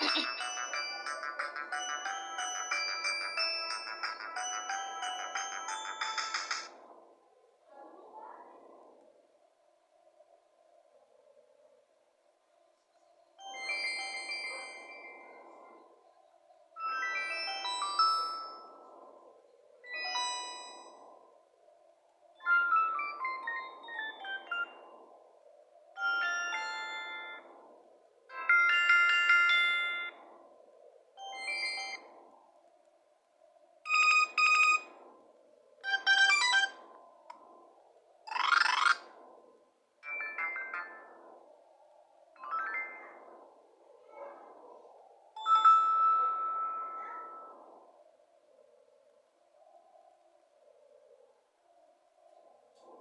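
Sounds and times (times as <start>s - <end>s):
electronic ringtone melodies: 0.0s - 6.7s, 16.8s - 18.7s, 22.4s - 24.8s, 26.0s - 27.4s, 28.3s - 30.2s, 33.9s - 34.9s, 35.8s - 36.8s.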